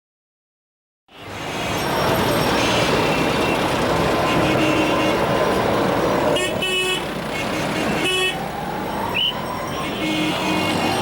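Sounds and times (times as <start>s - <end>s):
road traffic engines: 1.1s - 11.0s
car horns honking: 4.2s - 5.7s, 6.3s - 8.4s, 9.8s - 11.0s.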